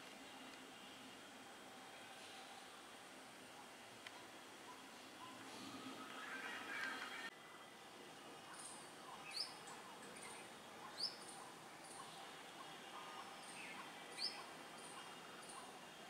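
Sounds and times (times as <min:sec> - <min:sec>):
birds chirping: 0:04.1 - 0:07.3, 0:08.4 - 0:16.0.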